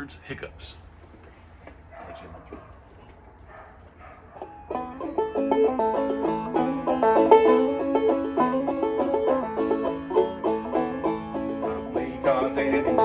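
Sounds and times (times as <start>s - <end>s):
banjo plucking fiddle tune: 4.7s - 13.0s.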